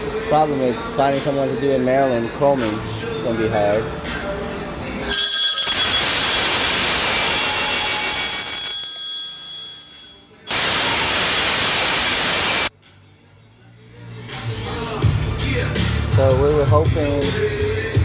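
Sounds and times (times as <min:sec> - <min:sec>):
loud hiss with high whistle: 0:05.6 - 0:08.8, 0:10.5 - 0:12.7.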